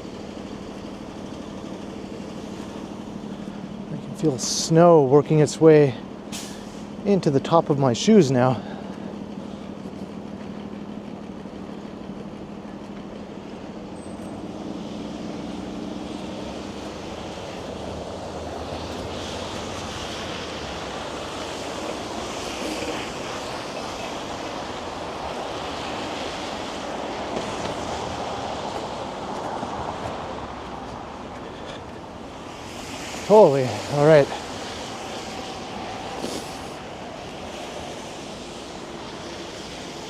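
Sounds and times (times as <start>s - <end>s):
low engine hum: 0.0s - 40.0s
street traffic noise: 0.0s - 40.0s.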